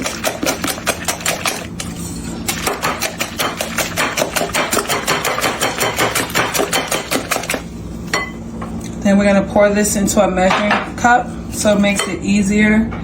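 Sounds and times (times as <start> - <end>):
whisk clicking against bowl: 2.5 - 7.6.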